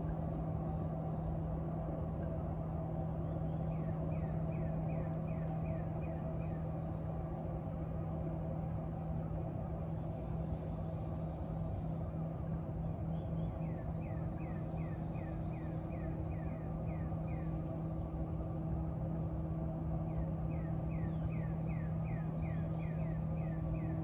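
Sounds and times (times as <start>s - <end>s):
condenser fan rushing: 0.0s - 24.0s
heat pump humming: 0.0s - 24.0s
bird singing: 3.2s - 7.1s, 9.6s - 12.3s, 12.9s - 18.8s, 20.0s - 24.0s.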